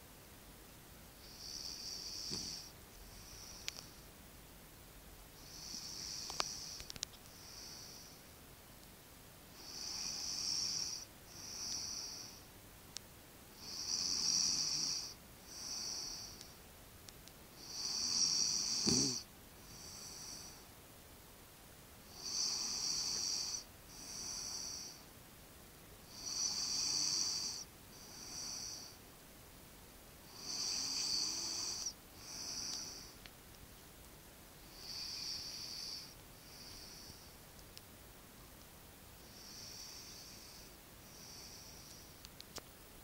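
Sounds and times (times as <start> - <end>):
person snoring: 1.2 - 3.8, 5.4 - 8.2, 9.6 - 12.4, 13.6 - 16.4, 17.6 - 20.6, 22.1 - 25.0, 26.1 - 29.0, 30.3 - 33.2, 34.7 - 37.3, 39.3 - 42.2.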